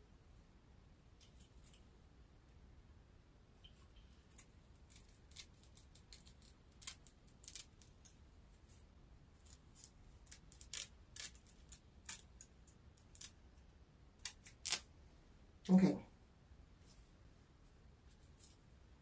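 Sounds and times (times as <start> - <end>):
scissors snipping: 4.3 - 8.2, 9.4 - 13.4, 14.2 - 14.9.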